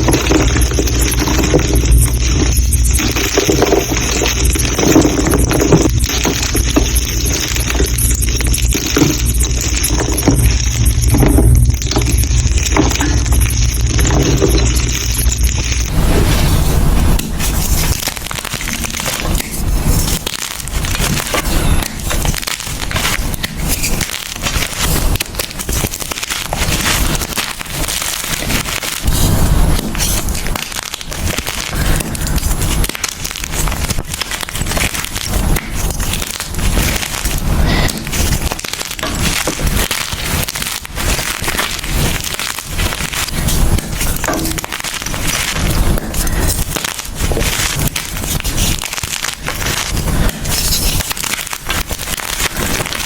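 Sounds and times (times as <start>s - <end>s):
chalk crunching and crackling: 0.0s - 53.0s.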